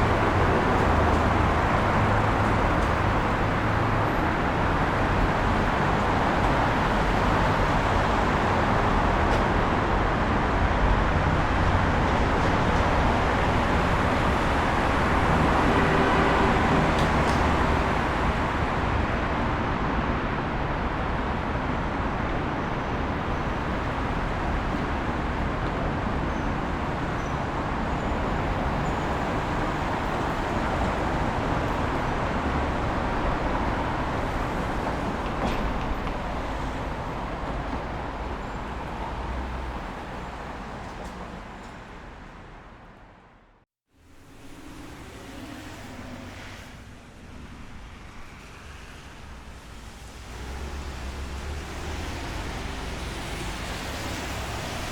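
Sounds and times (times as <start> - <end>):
passing vehicles rushing: 0.0 - 43.2, 44.1 - 54.9.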